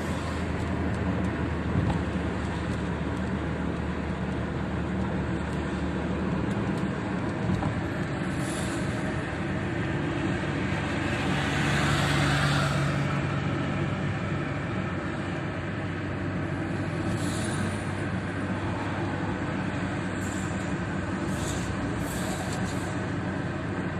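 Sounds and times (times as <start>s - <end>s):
low car hum: 0.0s - 23.9s
rain and wet road rush: 0.0s - 23.9s.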